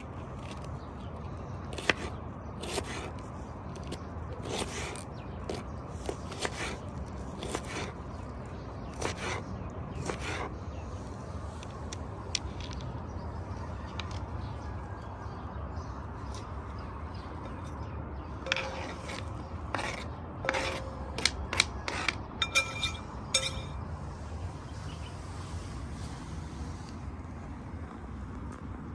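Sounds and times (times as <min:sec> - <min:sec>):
outdoor background noise: 0:00.0 - 0:28.9
kitchen utensils knocking: 0:18.5 - 0:23.8.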